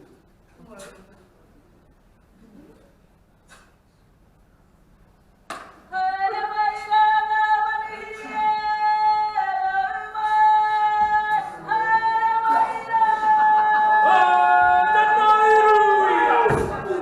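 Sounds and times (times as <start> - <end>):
woman singing slow melody: 5.9 - 14.2.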